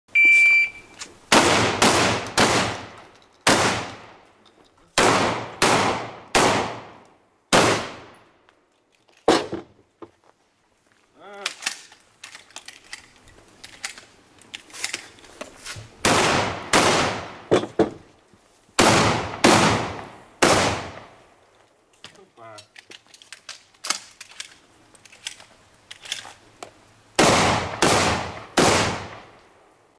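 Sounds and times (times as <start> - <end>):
shot timer beep: 0.1 - 1.0
shotgun shots with echo: 1.3 - 2.9, 5.0 - 8.1, 16.0 - 17.5, 18.8 - 21.1, 27.2 - 29.3.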